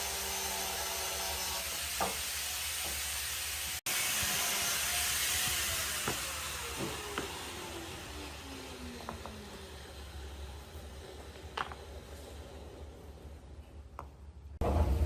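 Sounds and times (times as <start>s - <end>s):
motor winding down tone: 4.2s - 10.9s.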